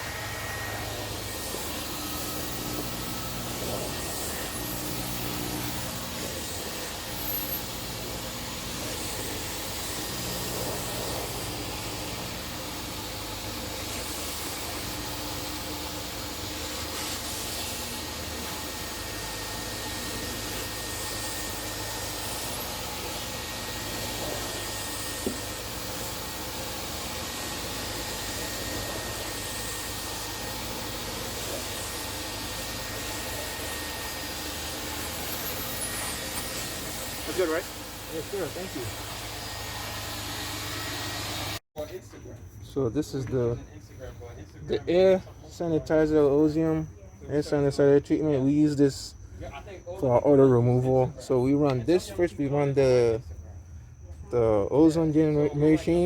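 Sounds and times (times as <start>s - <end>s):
vacuum motor rushing hiss: 0.0s - 41.6s.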